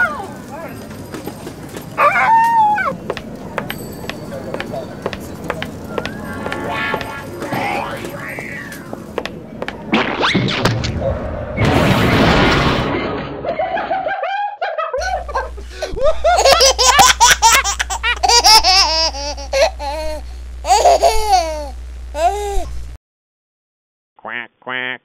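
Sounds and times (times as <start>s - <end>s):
person laughing: 13.5s - 22.8s
low steady hum: 15.0s - 23.0s.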